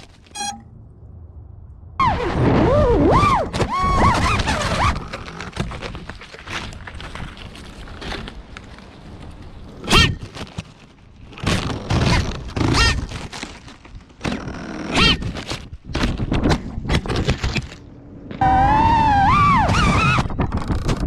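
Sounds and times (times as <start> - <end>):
drone motors whining: 18.4 - 20.3.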